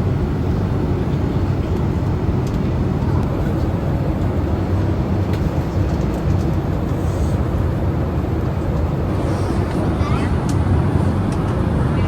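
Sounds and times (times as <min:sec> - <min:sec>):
airliner cabin rumble: 0:00.0 - 0:12.0.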